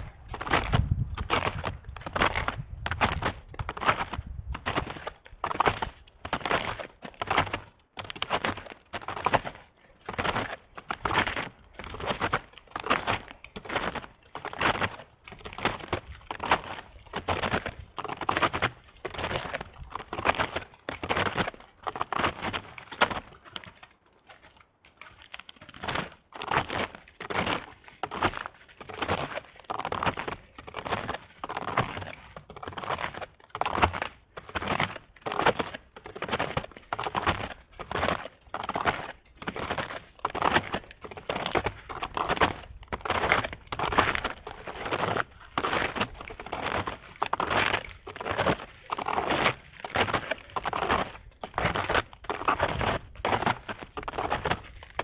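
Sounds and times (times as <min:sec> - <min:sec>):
snowshoes crunching in snow: 0:00.0 - 0:23.8, 0:25.2 - 0:55.0.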